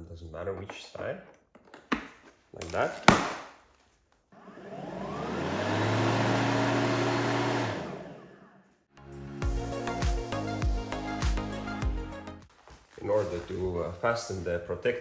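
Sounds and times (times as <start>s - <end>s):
electric lawnmower motor whine: 4.4s - 8.5s.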